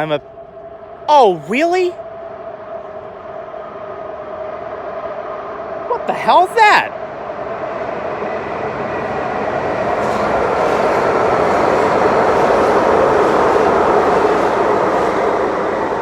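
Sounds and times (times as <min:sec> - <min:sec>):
train wheels on rails: 0:08.4 - 0:16.0.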